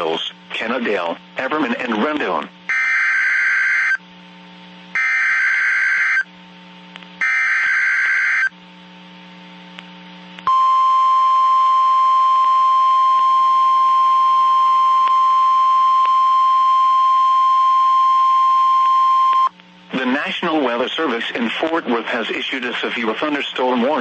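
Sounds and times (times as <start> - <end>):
steady single-pitch attention tone: 10.5 - 19.5.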